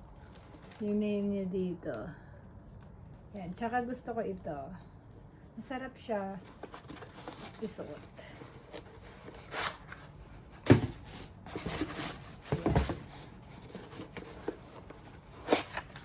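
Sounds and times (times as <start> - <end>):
shoe packaging knocks and rustles: 8.5 - 16.0.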